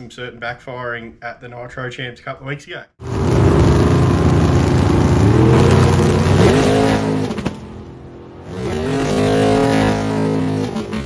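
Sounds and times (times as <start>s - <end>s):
race car engine revving: 3.0s - 11.0s.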